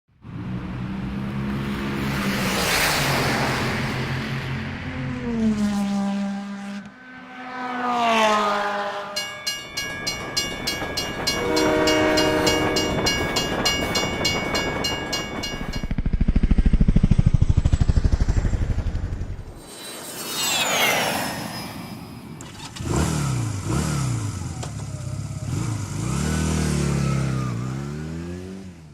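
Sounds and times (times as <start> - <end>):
train horn passing: 5.6 - 15.8
low horn chord: 8.2 - 15.0
crossing signal bell ringing: 9.0 - 16.0
high falling whine: 9.0 - 22.4
rapid low throbbing: 9.2 - 19.8.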